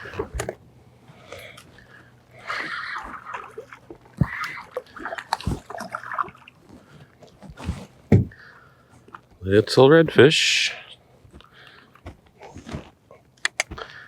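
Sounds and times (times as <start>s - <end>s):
fish splashing in water: 2.4s - 6.9s.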